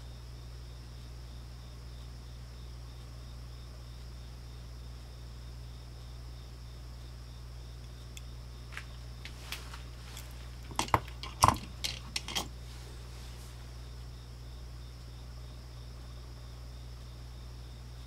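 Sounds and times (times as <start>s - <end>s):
small metallic clicks and taps: 10.7s - 12.5s.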